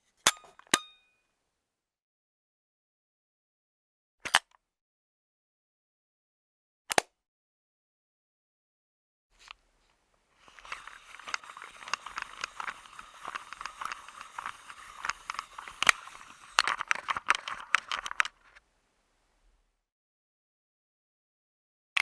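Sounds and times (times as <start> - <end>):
camera rattling and scraping: 10.4 - 18.6
film camera mechanism clicking: 10.4 - 18.6.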